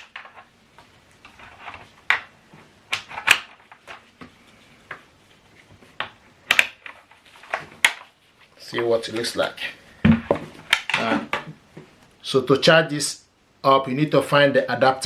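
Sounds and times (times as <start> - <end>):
clicks and knocks of speaker handled: 10.1 - 11.9.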